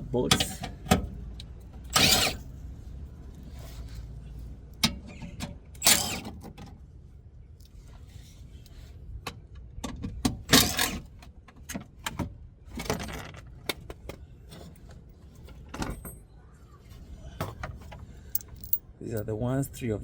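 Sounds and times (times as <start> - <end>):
metallic clatter of bolts: 1.9 - 2.4, 18.3 - 19.3.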